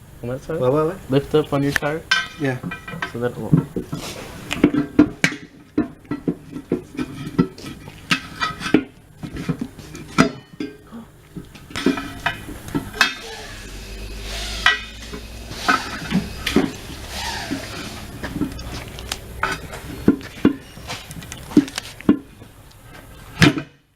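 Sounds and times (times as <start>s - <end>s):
low steady hum: 0.0s - 23.6s
metallic clanks and knocks: 2.1s - 10.8s, 11.6s - 13.6s.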